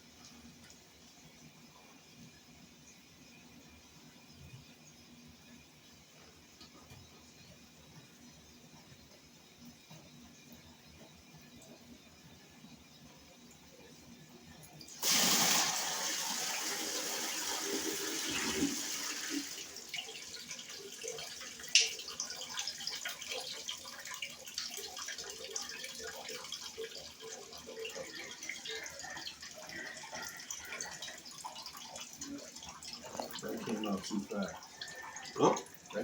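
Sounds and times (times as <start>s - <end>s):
water trickling and dripping: 0.0s - 15.2s, 19.6s - 36.0s
drain water gushing: 14.9s - 36.0s.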